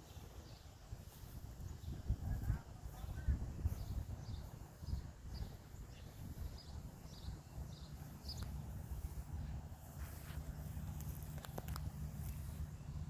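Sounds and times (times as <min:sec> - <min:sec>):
low rumble on microphone: 0:00.0 - 0:13.0
small birds chirping: 0:00.0 - 0:13.0.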